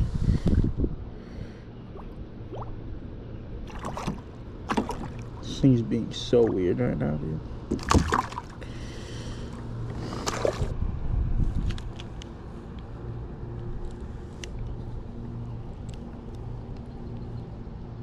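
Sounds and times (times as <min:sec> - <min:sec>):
steady low hum: 0:00.0 - 0:18.0
water splashing against kayak: 0:03.6 - 0:05.6, 0:07.7 - 0:08.6, 0:10.0 - 0:10.8.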